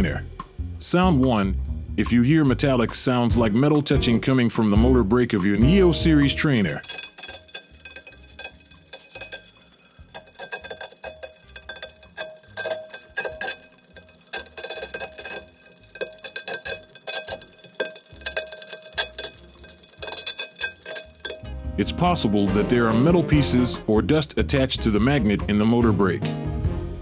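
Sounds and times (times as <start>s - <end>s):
metallic ticks and rings: 6.2s - 21.6s.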